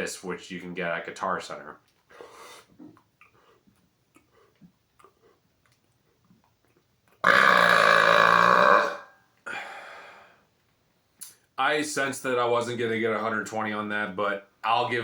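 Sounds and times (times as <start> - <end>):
man burping loudly: 7.2 - 9.1
faint breaths: 9.4 - 10.6.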